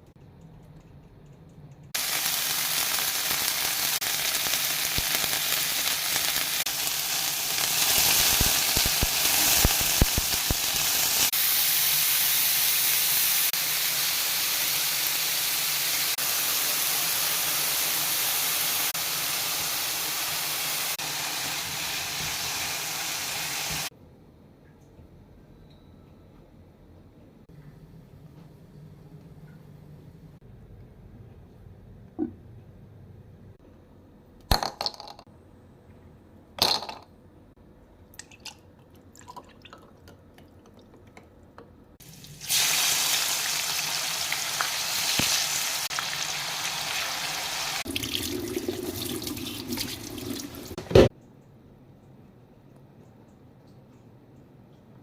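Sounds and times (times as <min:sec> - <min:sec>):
chicken sizzling in hot oil: 0:02.0 - 0:23.9, 0:42.0 - 0:51.1.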